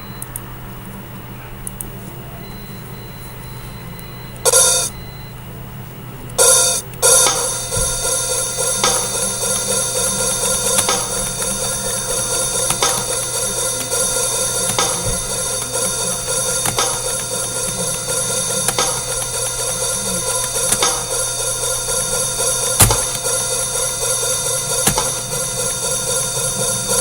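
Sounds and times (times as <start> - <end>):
low steady hum: 0.0 - 27.0
cymbal crash: 6.4 - 27.0
drum beat: 6.7 - 27.0.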